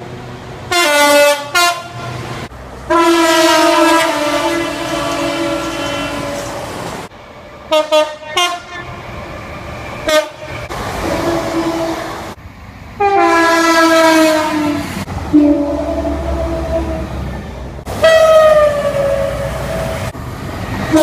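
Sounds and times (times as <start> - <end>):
train horn blasts: 0.7 - 2.2, 2.9 - 6.7, 7.7 - 9.0, 10.0 - 10.6, 13.0 - 17.1, 18.0 - 19.4.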